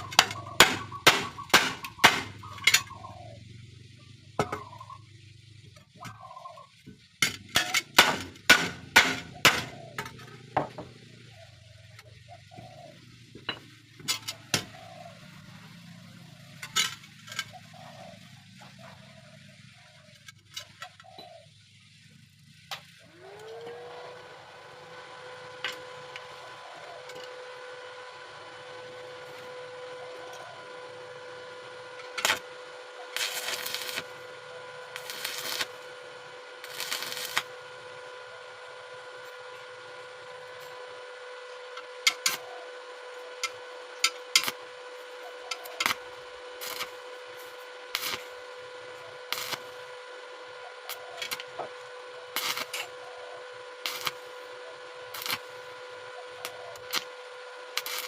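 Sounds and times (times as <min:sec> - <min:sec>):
power tool motor whine: 0:23.0 - 0:58.0.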